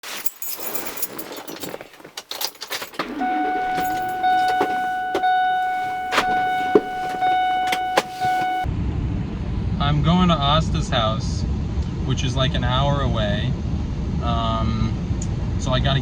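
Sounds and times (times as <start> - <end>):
keys jangling: 0.0 - 8.6.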